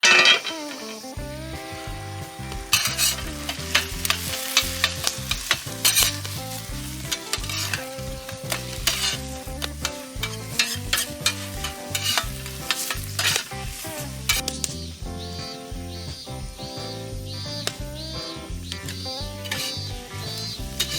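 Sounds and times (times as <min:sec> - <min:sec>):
metal spatula scraping pan: 0:00.0 - 0:01.2, 0:02.6 - 0:14.7, 0:18.7 - 0:20.9
background music: 0:00.0 - 0:20.9
oil sizzling: 0:00.0 - 0:20.9.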